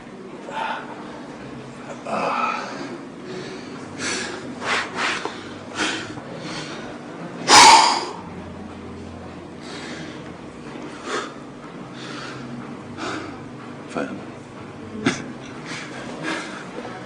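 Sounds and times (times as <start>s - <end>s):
person's forceful breaths: 2.2s - 7.0s, 11.0s - 13.5s, 15.7s - 16.8s.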